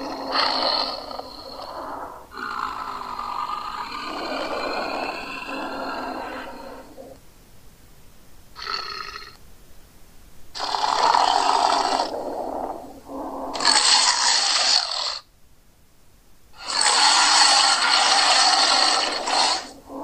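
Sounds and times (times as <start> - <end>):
monster rough breathy growls: 0.0 - 7.2, 10.6 - 15.2, 16.6 - 20.0.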